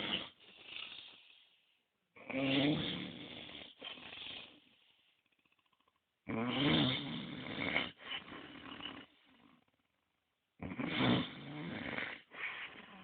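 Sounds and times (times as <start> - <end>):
person snoring: 2.2 - 4.8, 5.7 - 9.7, 10.6 - 13.0.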